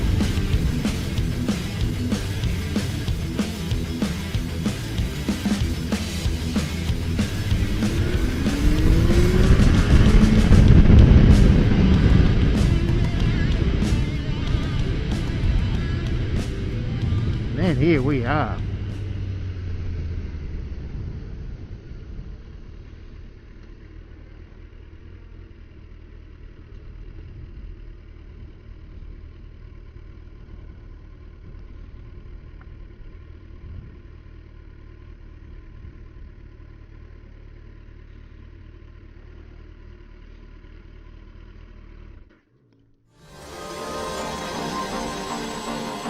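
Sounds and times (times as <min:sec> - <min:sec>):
vehicle engine idling: 0:00.0 - 0:42.6.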